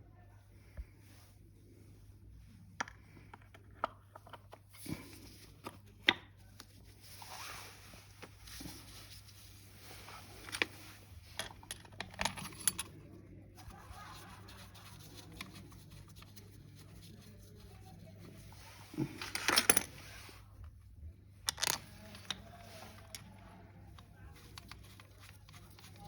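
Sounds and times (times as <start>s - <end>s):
metal parts clinking and scraping: 10.2s - 13.0s, 19.1s - 20.1s, 21.5s - 23.3s.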